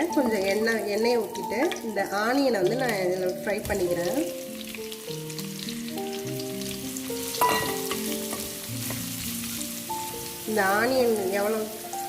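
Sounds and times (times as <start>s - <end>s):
onion sizzling in hot oil: 0.0s - 12.0s
soft background music: 0.0s - 12.0s.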